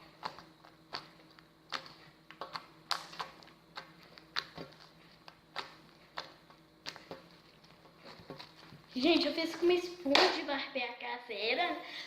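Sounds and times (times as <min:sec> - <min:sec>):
slime squeezed with clicking pops: 0:00.2 - 0:07.2.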